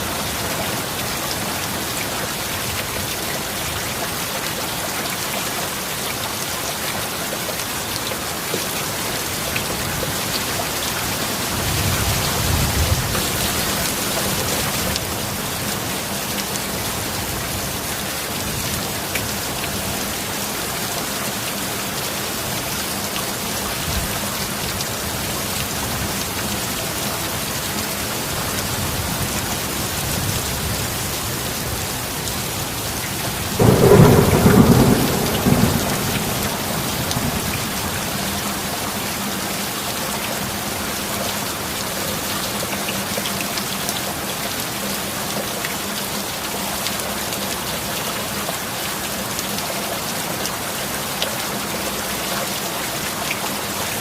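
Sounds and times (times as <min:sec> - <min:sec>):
heavy rain: 0:00.0 - 0:54.0
thunder rumbling: 0:33.3 - 0:38.7.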